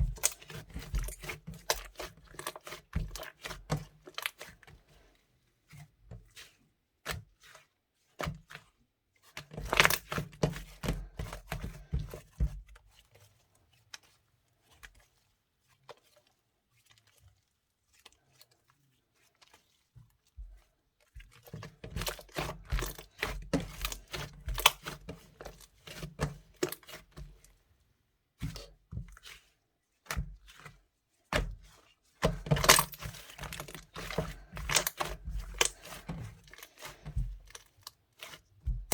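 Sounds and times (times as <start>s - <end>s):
slime squishing with sticky pops: 0.0s - 4.6s, 21.1s - 27.4s, 31.3s - 38.9s.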